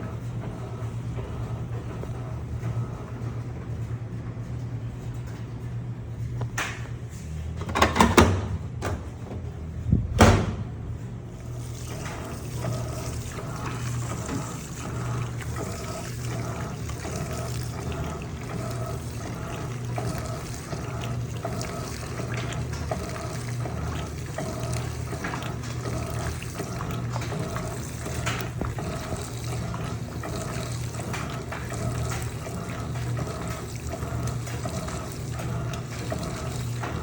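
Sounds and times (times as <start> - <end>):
washing machine churning: 0.0 - 37.0
washing machine motor hum: 0.0 - 37.0
water sloshing: 11.4 - 37.0.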